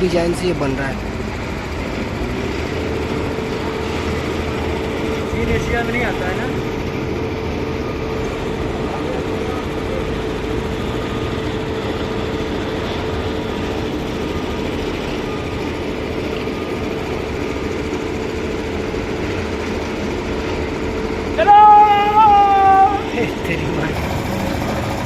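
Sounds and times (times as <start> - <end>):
engine humming steadily: 0.0 - 25.0.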